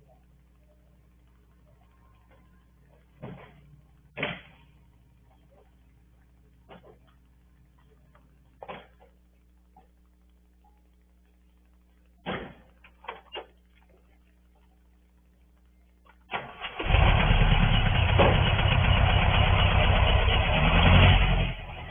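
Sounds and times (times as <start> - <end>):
compressor running with low chugging: 16.6 - 21.8.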